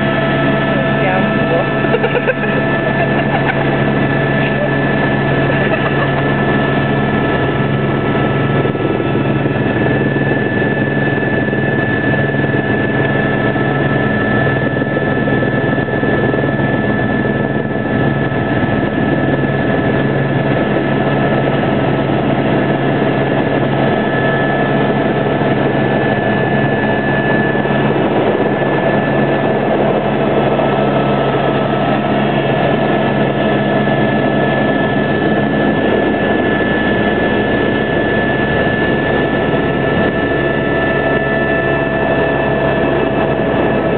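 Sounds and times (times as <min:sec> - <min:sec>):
helicopter rotor noise: 0:00.0 - 0:43.9
helicopter turbine whine: 0:00.0 - 0:43.9.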